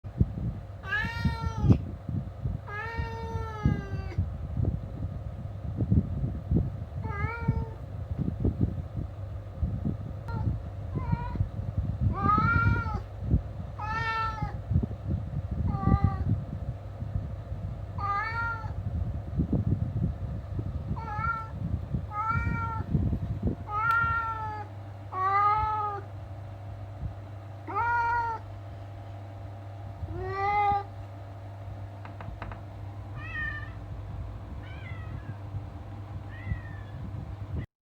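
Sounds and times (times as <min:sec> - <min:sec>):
cat meowing: 0:00.8 - 0:01.8, 0:02.7 - 0:04.2, 0:12.1 - 0:13.0, 0:13.8 - 0:14.6, 0:18.0 - 0:18.8, 0:21.0 - 0:22.9, 0:23.7 - 0:26.1, 0:27.7 - 0:28.4, 0:30.1 - 0:30.9, 0:33.2 - 0:33.8, 0:34.6 - 0:35.4, 0:36.3 - 0:37.0
low rumbling handling noise: 0:18.7 - 0:24.9, 0:28.5 - 0:37.6.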